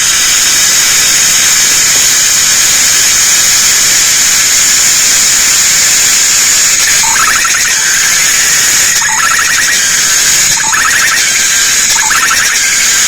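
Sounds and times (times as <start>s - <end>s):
cicadas droning: 5.1s - 13.0s
insect pulsing trill call: 6.7s - 13.0s.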